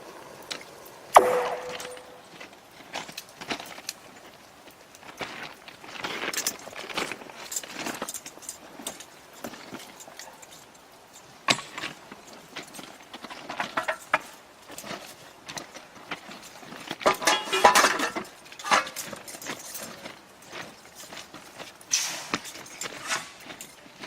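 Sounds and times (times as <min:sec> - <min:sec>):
clinks and knocks: 0:01.2 - 0:02.5, 0:13.2 - 0:14.8, 0:16.9 - 0:20.2, 0:21.9 - 0:24.0.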